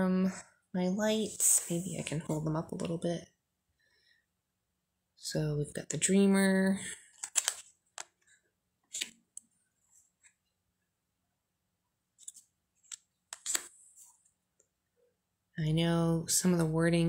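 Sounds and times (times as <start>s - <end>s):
cards snapping and sliding: 7.2s - 8.1s, 12.2s - 13.7s.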